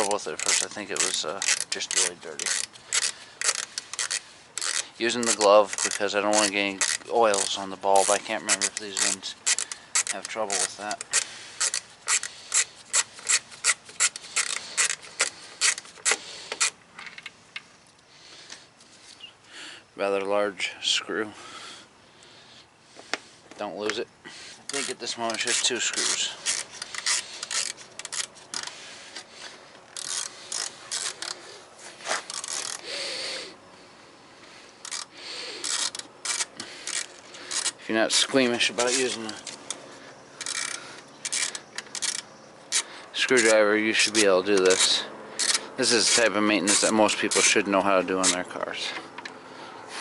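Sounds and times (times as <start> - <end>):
grating squeak: 0.0 - 16.8, 24.7 - 33.5, 34.9 - 49.0
screwdriver rasping strokes: 0.0 - 16.8, 24.6 - 33.3, 34.8 - 39.8, 40.4 - 48.5.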